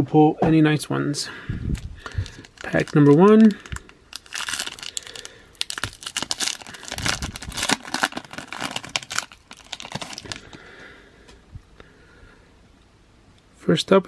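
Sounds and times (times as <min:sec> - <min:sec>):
wrapper tearing and crinkling: 0:01.8 - 0:10.6.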